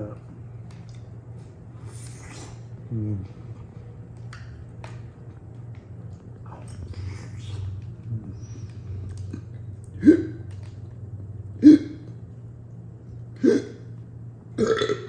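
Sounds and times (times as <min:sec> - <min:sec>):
man hiccuping: 0:11.6 - 0:12.1, 0:13.4 - 0:13.9, 0:14.6 - 0:15.0.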